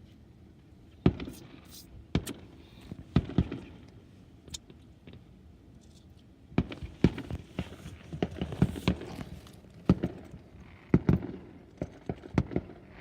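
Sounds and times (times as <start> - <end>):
fireworks popping and crackling: 6.6 - 13.0.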